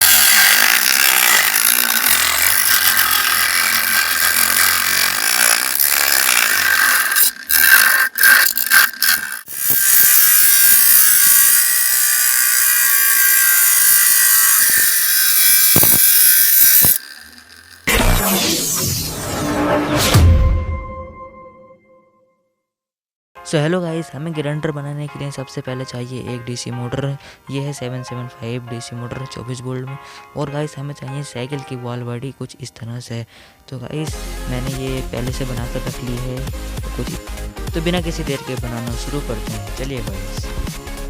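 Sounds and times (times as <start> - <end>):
grinder wheel grinding: 0.0 - 18.4.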